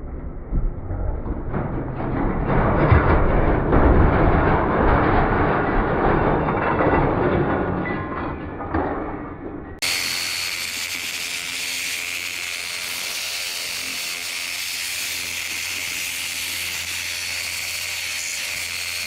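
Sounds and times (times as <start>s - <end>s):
fan motor hissing and whining: 9.8s - 19.0s.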